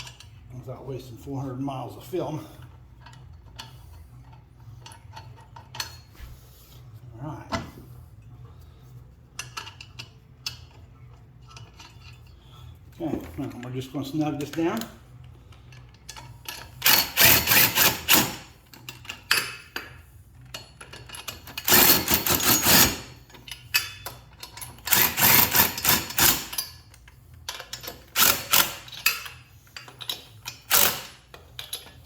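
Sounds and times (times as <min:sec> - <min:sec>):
ratchet wrench clicking: 0:16.5 - 0:19.1, 0:21.2 - 0:23.9, 0:24.7 - 0:26.8, 0:27.5 - 0:32.0.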